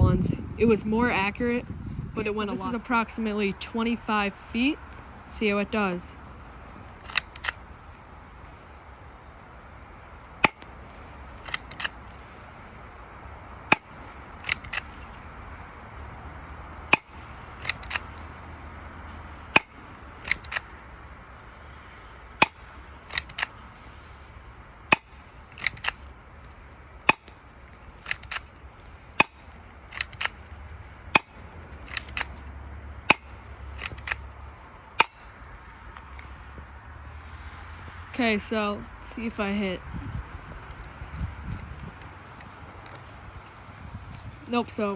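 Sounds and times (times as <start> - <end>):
airsoft pistol shots: 33.1 - 34.2.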